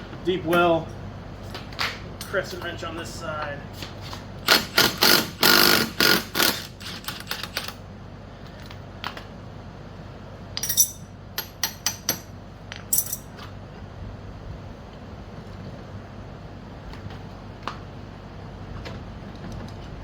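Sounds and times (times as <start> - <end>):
light metal clinks of tools: 10.6 - 11.1, 12.8 - 13.4.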